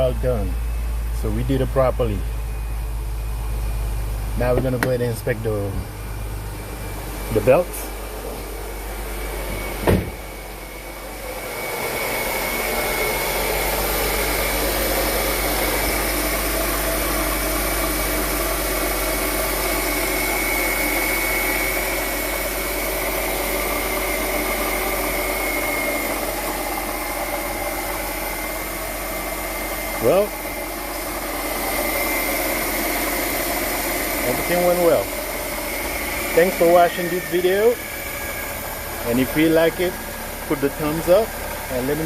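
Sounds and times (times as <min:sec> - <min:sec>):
car engine idling: 0:00.0 - 0:42.0.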